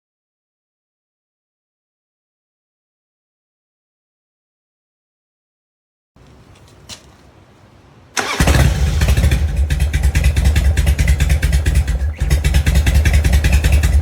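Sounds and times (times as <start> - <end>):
motorcycle engine starting and running: 8.2 - 14.0.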